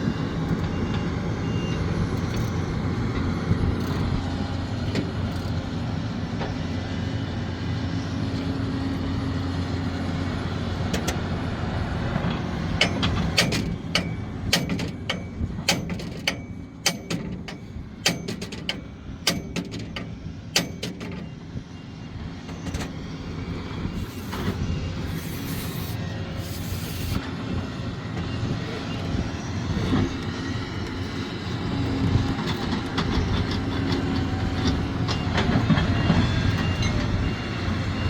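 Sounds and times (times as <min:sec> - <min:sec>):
heavy diesel engine running: 0:00.0 - 0:38.0
sharp knocks and clanks: 0:12.3 - 0:21.3.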